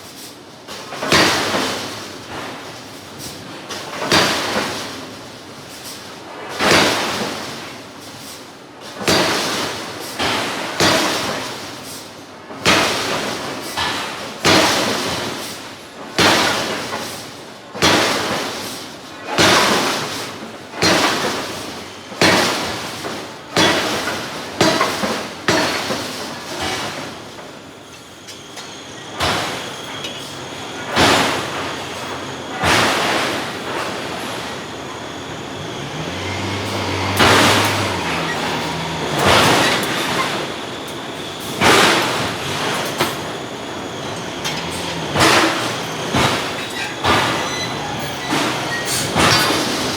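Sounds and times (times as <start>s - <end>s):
forging hammer striking steel: 36.2s - 49.9s.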